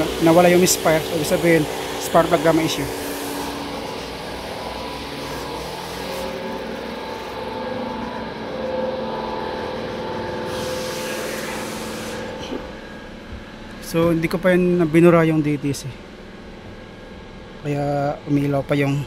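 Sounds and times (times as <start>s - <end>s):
car engine running steadily: 0.0s - 10.5s.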